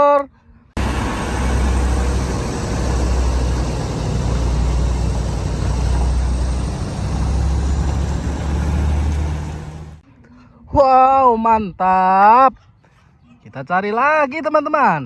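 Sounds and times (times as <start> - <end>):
excavator engine rumbling: 0.8 - 10.0.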